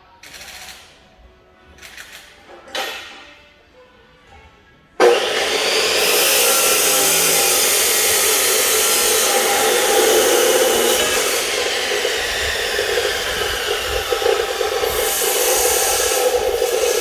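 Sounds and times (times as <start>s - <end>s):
power tool whirring: 5.0s - 17.0s.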